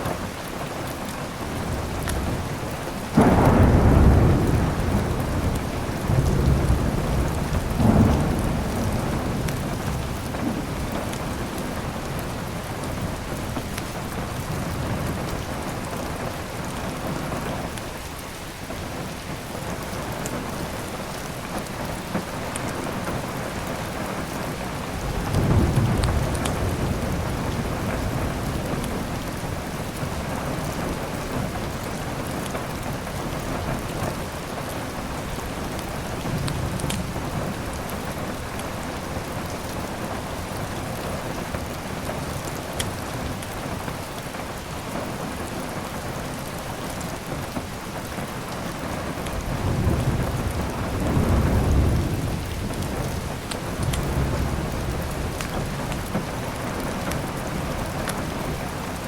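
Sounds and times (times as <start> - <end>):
heavy rain: 0.0 - 59.0
low rolling thunder: 1.5 - 17.5, 23.6 - 34.3, 49.0 - 59.0.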